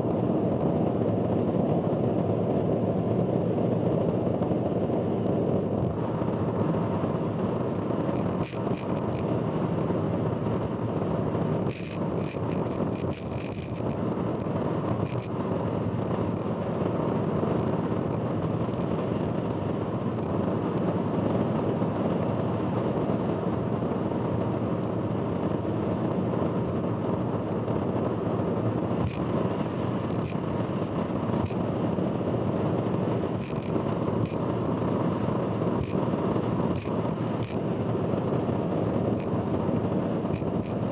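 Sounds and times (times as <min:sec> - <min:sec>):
road and tyre noise: 0:00.0 - 0:40.9
sharp clicks and rattles: 0:07.5 - 0:09.9, 0:11.6 - 0:15.3, 0:29.0 - 0:30.5, 0:33.4 - 0:34.9, 0:35.7 - 0:36.0, 0:36.6 - 0:37.6, 0:39.2 - 0:40.9.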